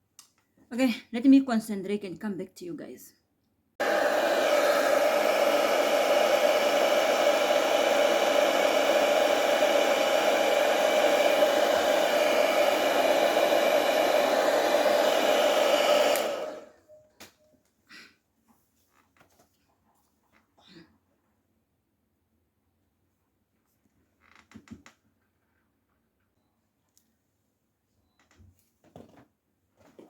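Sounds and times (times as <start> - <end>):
hair dryer motor whine: 3.8 - 16.8.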